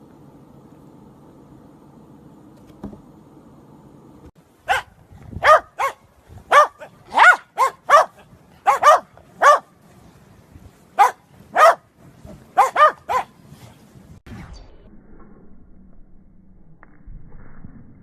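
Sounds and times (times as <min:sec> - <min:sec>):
dog barking: 0:04.7 - 0:09.7, 0:11.0 - 0:11.9, 0:12.6 - 0:13.3.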